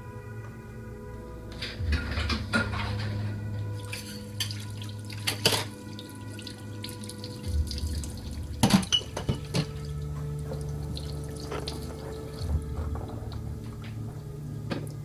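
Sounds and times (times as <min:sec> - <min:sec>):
low steady hum: 0:00.0 - 0:15.0
water running into a sink: 0:03.8 - 0:12.9.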